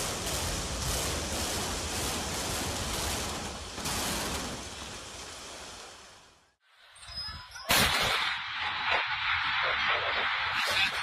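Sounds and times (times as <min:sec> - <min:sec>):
loud demolition blast: 0:00.0 - 0:06.0
demolition rumbling: 0:00.0 - 0:06.4.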